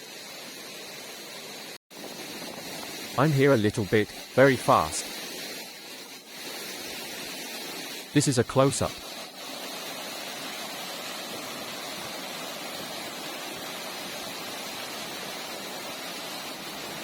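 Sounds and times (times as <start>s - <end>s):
waterfall rushing: 3.2s - 5.0s, 8.2s - 9.1s.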